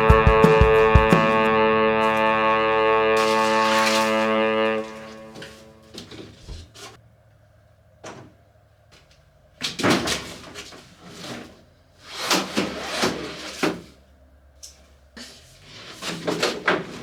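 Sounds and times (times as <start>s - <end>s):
household objects clattering: 2.0s - 7.0s, 9.6s - 14.0s, 15.2s - 17.0s.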